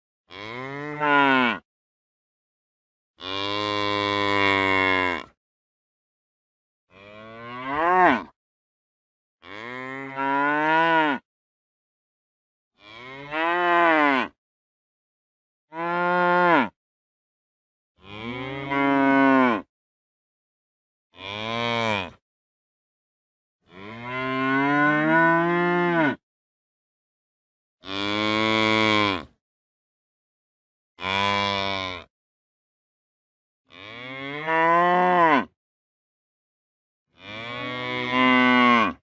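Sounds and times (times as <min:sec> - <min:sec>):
heifer mooing: 0:00.3 - 0:01.6, 0:03.2 - 0:05.3, 0:07.0 - 0:08.3, 0:09.4 - 0:11.2, 0:12.8 - 0:14.3, 0:15.7 - 0:16.7, 0:21.2 - 0:22.2, 0:23.7 - 0:26.2, 0:31.0 - 0:32.0, 0:33.7 - 0:35.5, 0:37.2 - 0:39.0.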